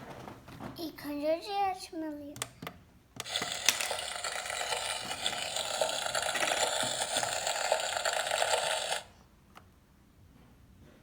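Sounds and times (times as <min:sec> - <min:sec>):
toy electronic sizzling sound: 0:03.2 - 0:09.1.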